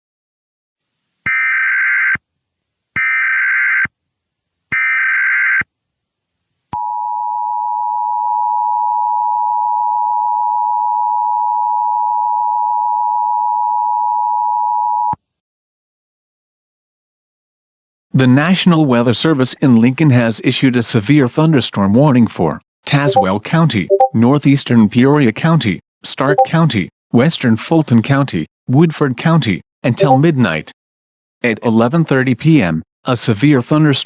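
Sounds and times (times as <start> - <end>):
two-tone attention signal: 23.1 - 23.3, 23.9 - 24.2, 26.3 - 26.6, 29.9 - 30.3
data burst tones: 23.9 - 24.2, 30.0 - 30.2.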